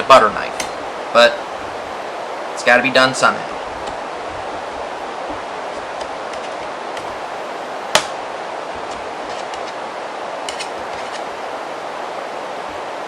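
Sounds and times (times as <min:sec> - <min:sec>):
recorder hiss: 0:00.0 - 0:13.0
plastic case snapping: 0:08.0 - 0:08.2.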